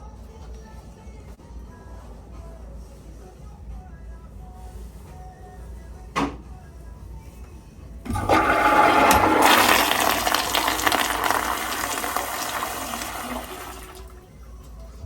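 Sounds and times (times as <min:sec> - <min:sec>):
toilet flushing: 0:08.1 - 0:14.3.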